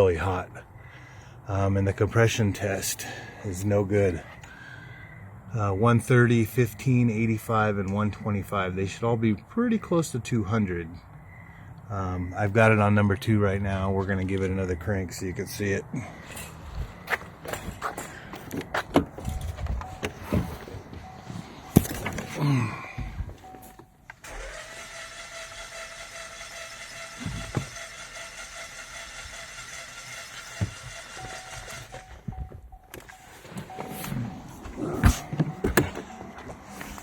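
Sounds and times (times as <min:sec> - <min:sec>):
starter motor cranking engine: 0:24.2 - 0:32.2.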